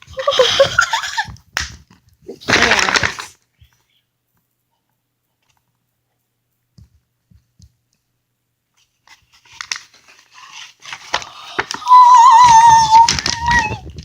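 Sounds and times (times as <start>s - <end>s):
plastic packaging crinkling: 2.4s - 3.4s, 9.1s - 14.0s.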